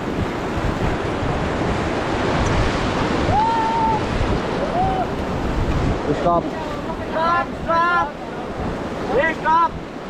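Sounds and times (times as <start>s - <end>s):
whitewater rushing: 0.0s - 10.0s
people shouting: 3.2s - 5.2s.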